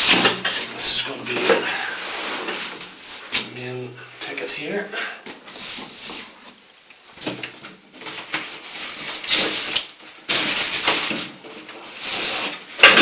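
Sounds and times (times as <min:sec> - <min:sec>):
cardboard rustling and scraping: 0:00.0 - 0:03.5, 0:07.2 - 0:13.0.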